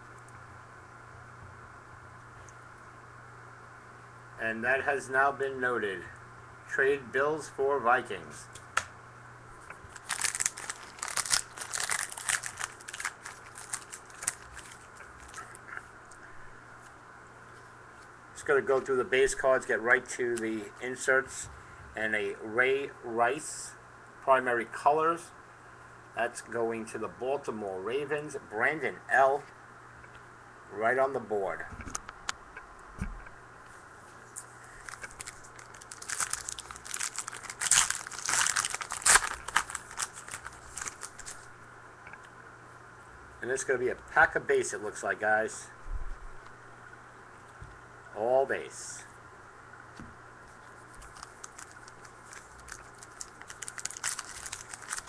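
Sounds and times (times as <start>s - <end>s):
wrapper crinkling: 9.9s - 15.6s, 34.7s - 41.5s, 50.5s - 55.0s.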